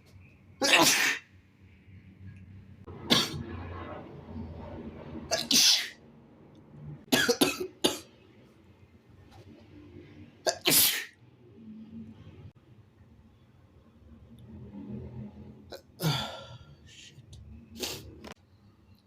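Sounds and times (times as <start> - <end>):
person sneezing: 0.6 - 1.2, 10.5 - 11.1.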